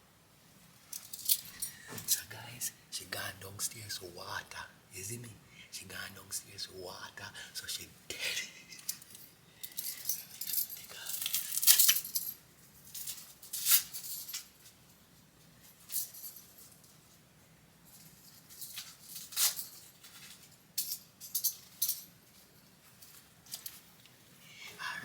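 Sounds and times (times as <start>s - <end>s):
metal handcuffs jangling: 0.9s - 1.8s, 8.8s - 14.8s, 15.7s - 17.1s, 17.9s - 23.8s.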